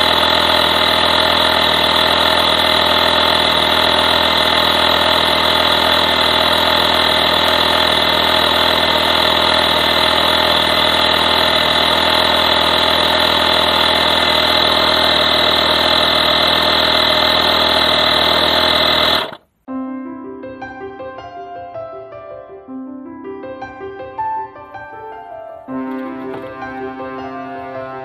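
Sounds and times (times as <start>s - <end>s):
air compressor running: 0.0s - 19.6s, 25.8s - 27.8s.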